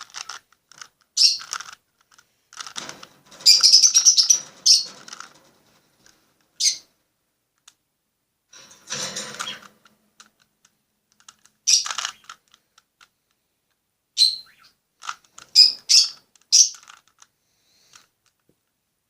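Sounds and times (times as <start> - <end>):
plastic cube layers clicking: 0.0 - 3.1, 5.0 - 5.4, 9.6 - 13.1, 15.0 - 15.6, 16.3 - 17.3.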